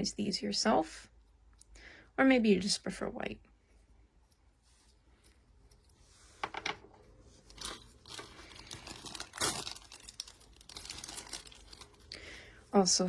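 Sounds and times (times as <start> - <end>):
plastic packaging crinkling: 7.3 - 13.0.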